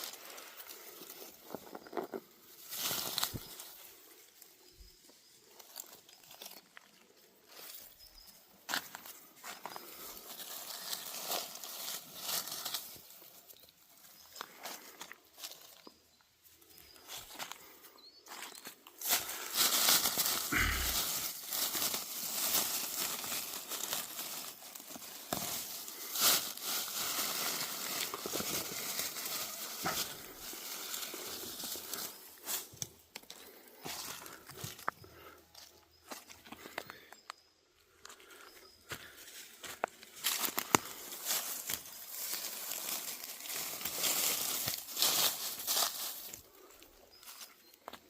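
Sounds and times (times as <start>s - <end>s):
dry leaves crunching: 0.0s - 36.7s, 38.2s - 48.0s.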